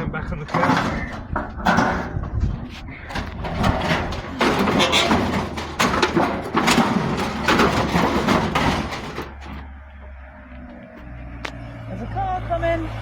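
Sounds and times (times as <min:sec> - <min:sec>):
scrap metal scraping and clattering: 0:00.0 - 0:09.9.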